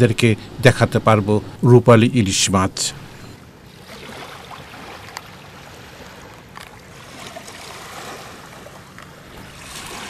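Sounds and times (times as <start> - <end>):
water lapping around boat: 2.8 - 10.0.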